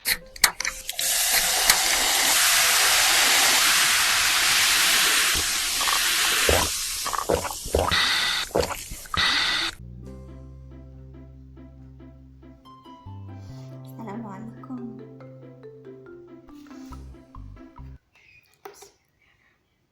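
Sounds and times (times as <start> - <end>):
soft music: 0.0 - 4.1, 9.8 - 18.0
loud steady hiss: 0.8 - 9.8.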